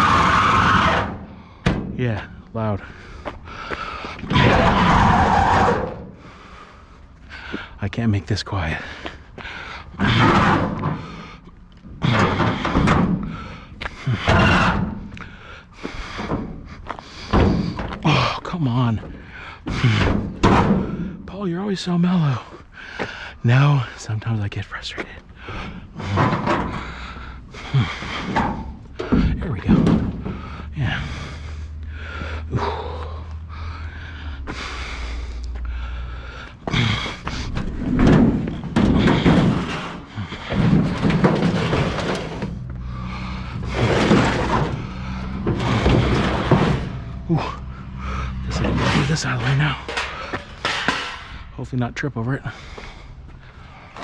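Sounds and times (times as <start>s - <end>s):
heavy scrap scraping and clattering: 0.0s - 33.0s, 34.5s - 51.8s
man breathing hard: 2.8s - 4.3s, 6.1s - 7.8s, 8.8s - 10.0s, 11.0s - 18.4s, 19.1s - 20.4s, 22.5s - 23.4s, 25.1s - 29.4s, 30.1s - 42.1s, 42.7s - 46.7s, 47.5s - 48.5s, 52.4s - 54.0s.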